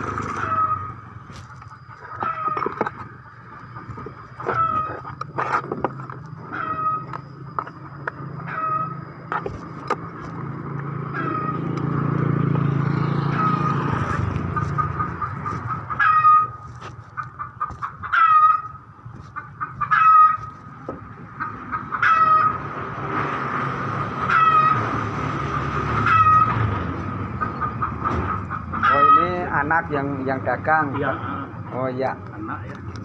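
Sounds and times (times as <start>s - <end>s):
small animal calling: 0.0s - 7.4s.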